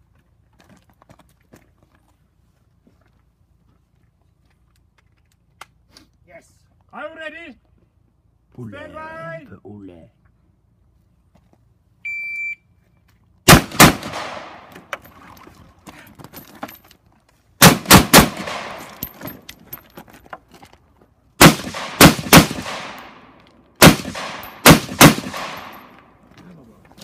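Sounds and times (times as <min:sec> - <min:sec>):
rifle shots echoing: 0:13.5 - 0:14.8, 0:17.6 - 0:19.2, 0:21.4 - 0:26.0.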